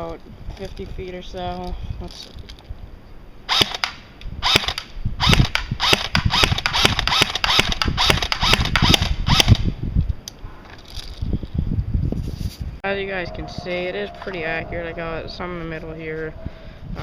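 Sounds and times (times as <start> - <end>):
airsoft rifle shots clacking: 3.5 - 9.7.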